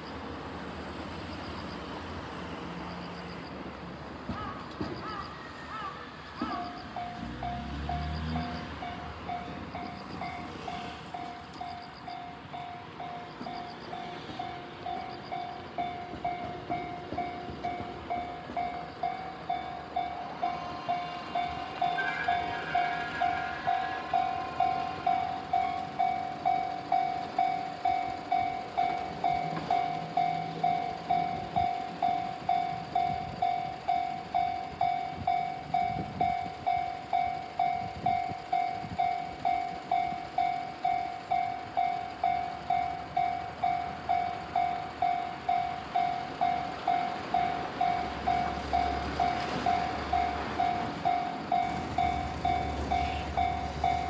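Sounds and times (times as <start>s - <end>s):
level-crossing warning bell: 0.0s - 4.0s, 4.8s - 54.0s
train running rumble: 0.0s - 54.0s.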